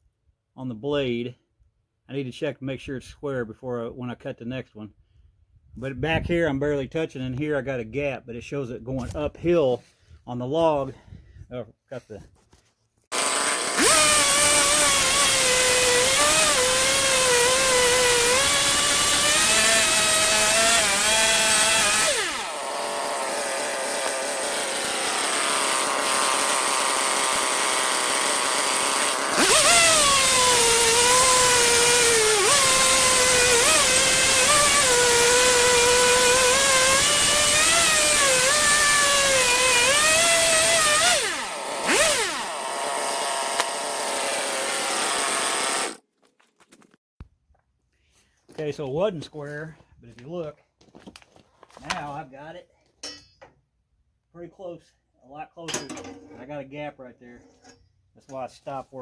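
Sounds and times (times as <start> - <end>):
chainsaw cutting through log: 13.1 - 46.0.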